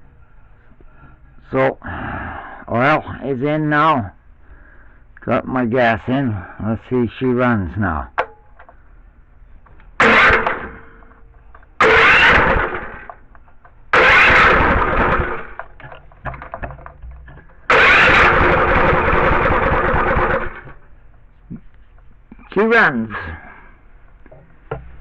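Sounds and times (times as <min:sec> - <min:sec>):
small engine starter cranking: 0:10.0 - 0:11.1, 0:11.8 - 0:13.2, 0:13.9 - 0:20.9.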